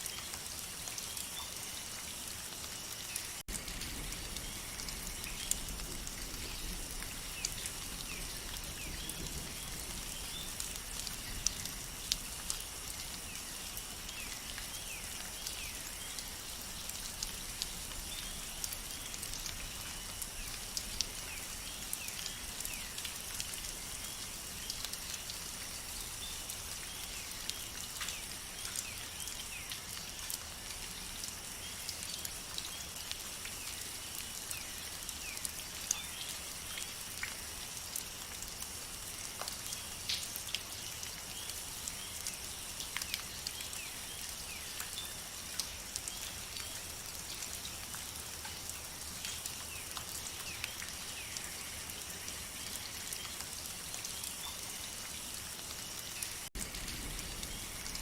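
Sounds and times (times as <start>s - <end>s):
rain drops striking: 0.0s - 58.0s.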